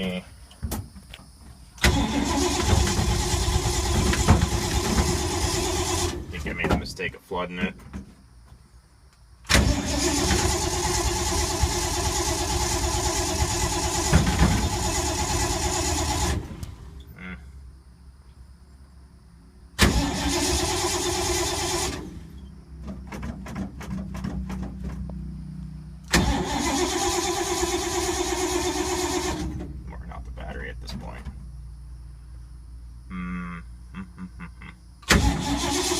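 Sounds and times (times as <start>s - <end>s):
starter cranking engine: 1.8s - 6.4s, 9.5s - 16.8s, 19.8s - 22.2s, 26.1s - 29.7s, 35.0s - 35.9s.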